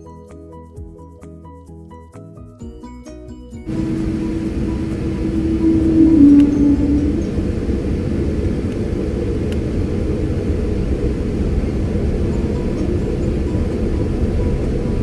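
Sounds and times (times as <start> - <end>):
airplane cabin engine rumble: 3.7 - 15.0
humming tone: 3.7 - 15.0.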